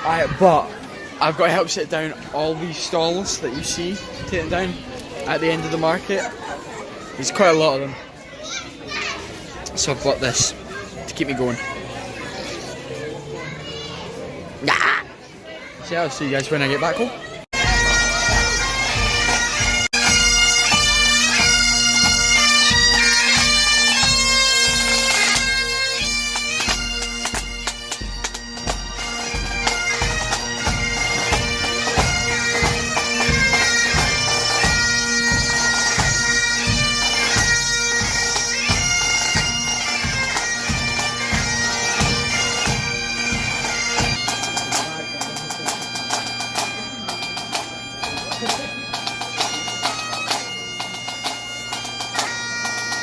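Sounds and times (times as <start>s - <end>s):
bagpipes playing: 17.5s - 53.0s.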